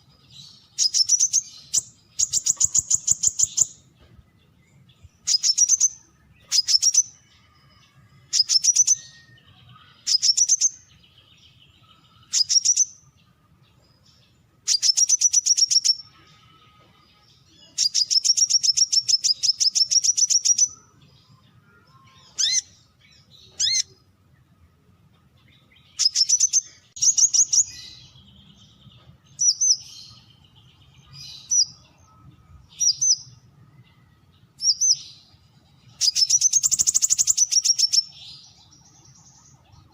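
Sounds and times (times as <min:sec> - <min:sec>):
faint bird chirps: 0:00.0 - 0:39.9
bird trills: 0:00.7 - 0:03.9, 0:05.2 - 0:10.9, 0:11.8 - 0:13.1, 0:14.6 - 0:16.8, 0:21.8 - 0:24.0, 0:25.6 - 0:28.2, 0:35.9 - 0:38.6.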